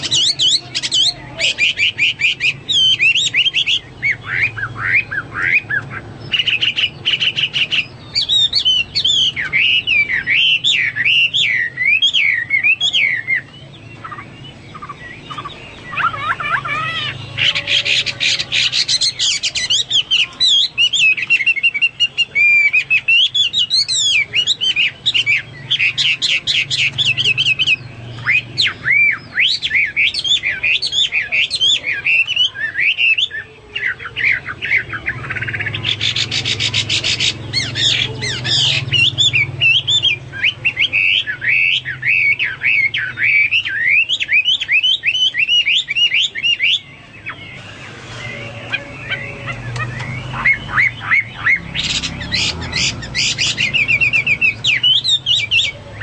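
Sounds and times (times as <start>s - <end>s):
bird singing whistled notes: 0.0s - 56.0s.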